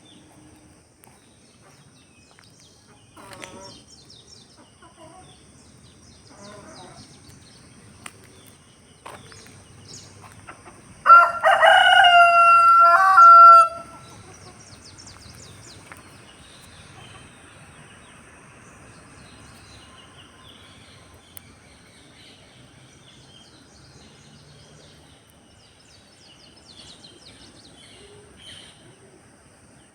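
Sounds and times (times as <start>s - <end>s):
small birds chirping: 0.0s - 29.9s
rooster crowing: 11.0s - 14.1s.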